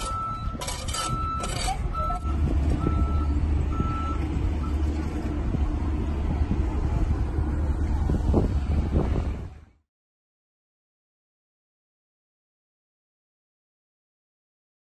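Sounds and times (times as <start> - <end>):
reversing alarm beeping: 0.0 - 4.9
heavy vehicle engine running: 0.0 - 9.8.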